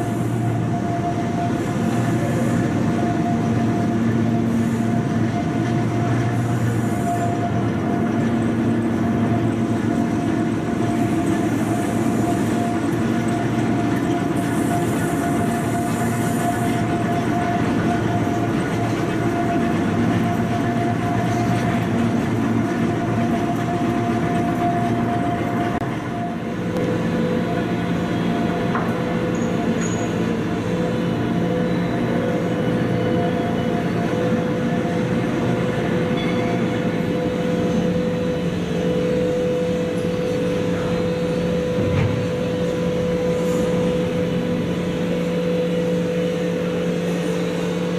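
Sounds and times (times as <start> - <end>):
train rumble: 0.0 - 47.9
train whine: 0.0 - 47.9.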